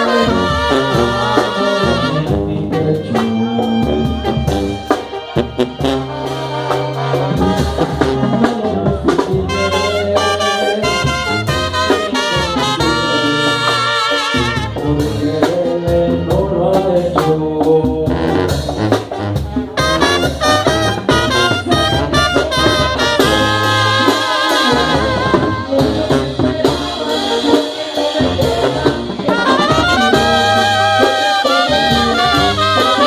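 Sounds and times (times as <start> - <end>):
low bass line: 0.0 - 24.0
brass band playing: 0.0 - 33.0
steady drum beat: 0.0 - 33.0.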